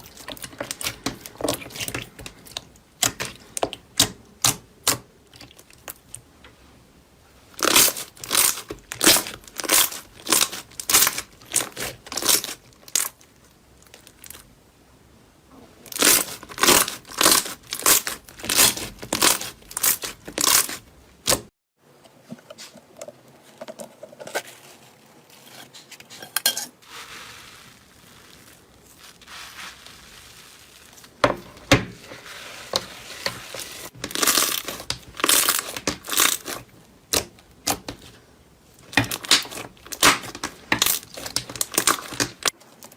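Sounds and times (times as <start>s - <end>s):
soft slime crinkling: 0.0s - 4.0s, 15.8s - 21.4s, 26.8s - 42.9s
slime crackling and crunching: 0.0s - 6.2s, 7.6s - 14.5s, 15.9s - 21.5s, 26.8s - 38.2s, 38.8s - 42.6s.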